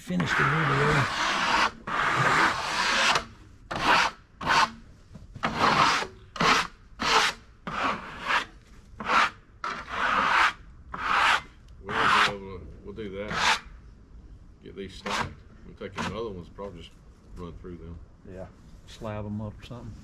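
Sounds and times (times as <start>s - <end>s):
rasping strokes on log end: 0.1s - 4.8s, 5.4s - 12.5s, 13.2s - 13.7s, 15.0s - 15.4s.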